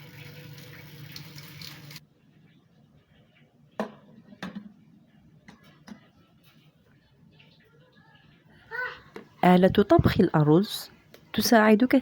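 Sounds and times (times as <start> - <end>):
running tap water: 0.0 - 2.0.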